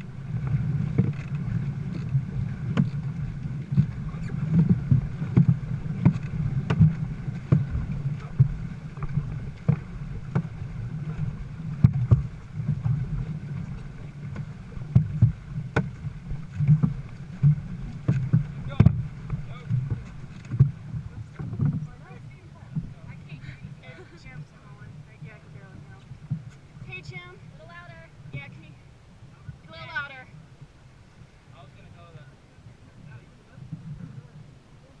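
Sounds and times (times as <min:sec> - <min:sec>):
paddles striking water: 0:00.0 - 0:35.0
rush of water and wind: 0:00.0 - 0:35.0.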